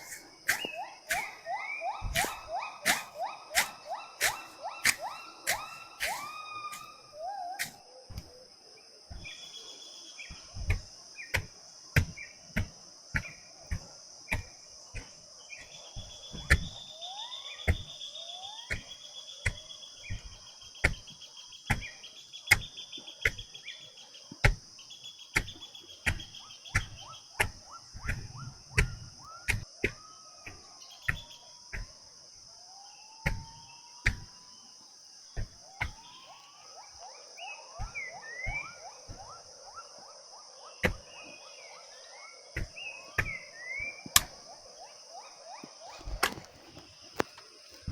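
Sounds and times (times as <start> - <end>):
hoe striking soil: 0.0 - 6.9, 10.2 - 16.8, 25.3 - 32.0, 33.2 - 34.4, 40.8 - 41.1, 42.6 - 44.4, 46.0 - 47.9
birds chirping: 0.0 - 31.9, 32.7 - 47.9
high insect drone: 0.0 - 47.9.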